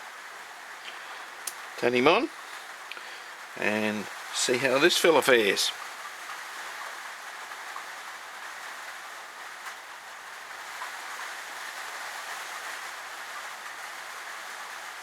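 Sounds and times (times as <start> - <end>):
background hiss: 0.0 - 15.0.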